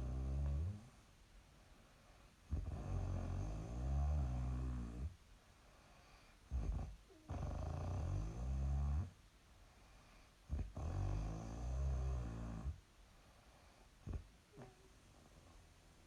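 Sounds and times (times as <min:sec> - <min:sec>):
quiet breaths: 0:00.0 - 0:16.0
woman snoring: 0:06.6 - 0:09.1.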